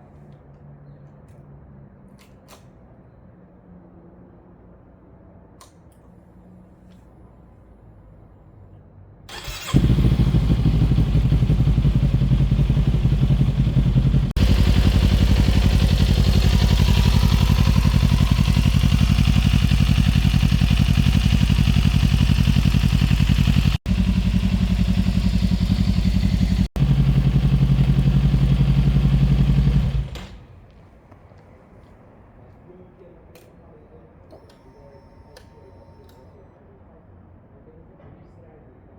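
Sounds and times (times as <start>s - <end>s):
motorcycle engine running: 9.3s - 30.4s.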